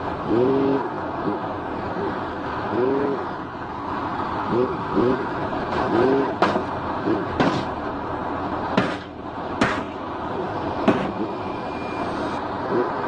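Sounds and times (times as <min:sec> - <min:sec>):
sharp knocks: 0:06.4 - 0:06.7, 0:07.4 - 0:07.7, 0:08.8 - 0:10.0.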